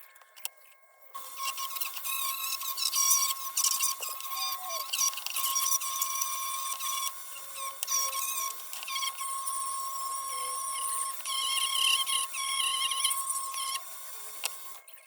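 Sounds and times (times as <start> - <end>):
abrasive bit squealing on metal: 1.2 - 13.8
rotary tool motor whine: 1.2 - 15.0.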